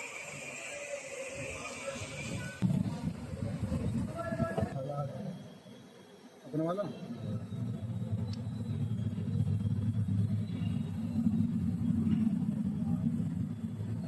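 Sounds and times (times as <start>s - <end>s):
belt bearing low rumble: 7.1s - 14.0s
car engine running: 7.1s - 14.0s.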